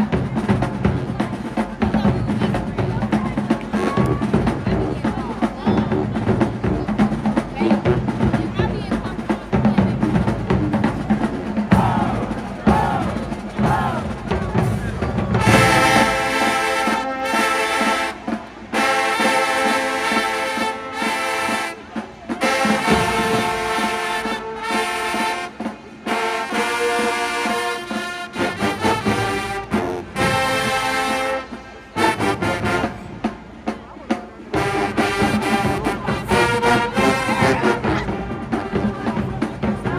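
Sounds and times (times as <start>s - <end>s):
marching band playing: 0.0s - 39.9s
brass held chords: 10.0s - 33.3s, 34.5s - 39.5s.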